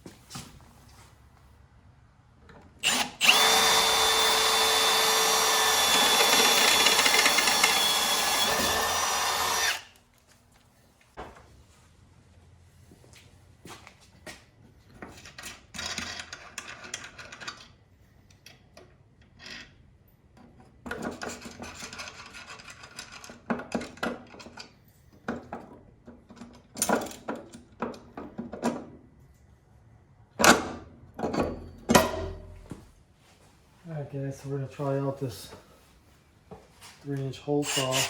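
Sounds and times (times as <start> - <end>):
sharp knocks and clanks: 30.4 - 32.9.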